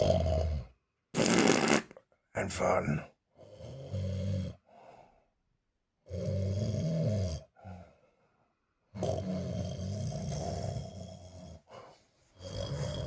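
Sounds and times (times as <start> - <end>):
rasping snore: 0.0 - 1.9, 3.4 - 4.6, 6.0 - 7.8, 8.9 - 11.7, 12.4 - 13.0.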